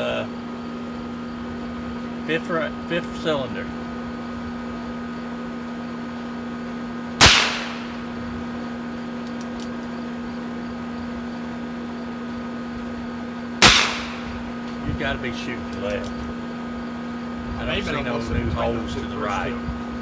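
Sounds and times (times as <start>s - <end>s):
steady hum: 0.0s - 20.0s
revolver gunshot with echo: 7.2s - 8.2s, 13.6s - 14.6s.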